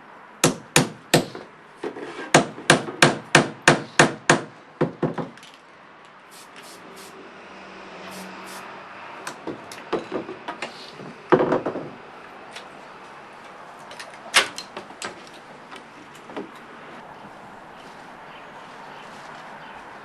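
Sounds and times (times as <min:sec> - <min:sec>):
steady background hiss: 0:05.4 - 0:07.3.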